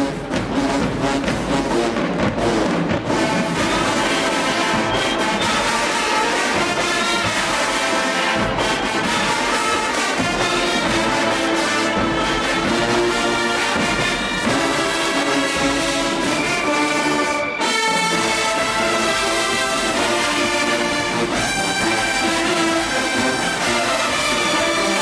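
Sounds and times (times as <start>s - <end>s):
marching band playing brass tune: 0.0s - 25.0s.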